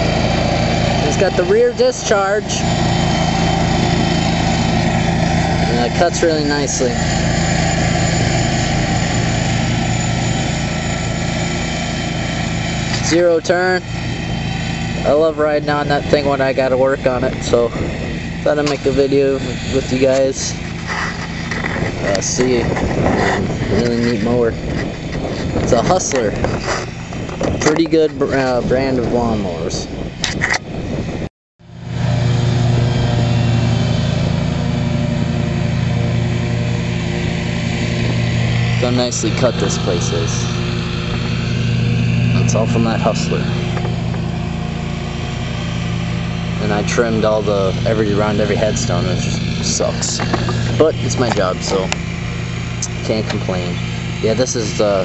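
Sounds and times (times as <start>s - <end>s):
lawn mower engine hum: 0.0s - 55.0s
mower blades cutting grass: 0.0s - 55.0s.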